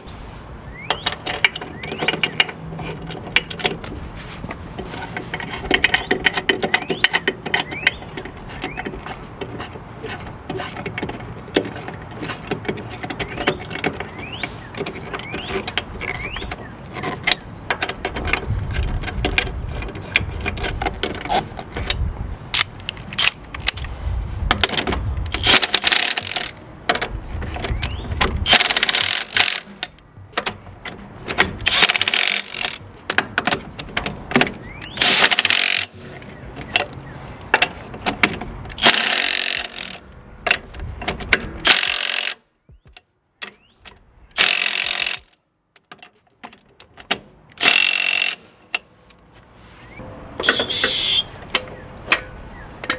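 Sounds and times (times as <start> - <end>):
impact wrench bursts: 0.0 - 18.8, 25.3 - 29.9, 31.4 - 32.9, 34.4 - 36.2, 38.7 - 40.2, 41.6 - 43.0, 44.4 - 45.4, 47.6 - 48.6, 50.4 - 51.4
metal tools clinking: 0.0 - 23.9, 24.5 - 48.9, 50.4 - 52.9.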